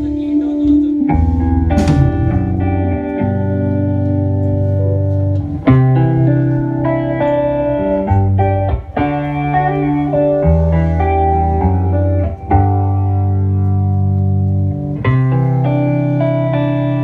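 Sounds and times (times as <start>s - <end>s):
guitar strumming chords: 1.1s - 6.2s
low bass line: 1.1s - 6.6s.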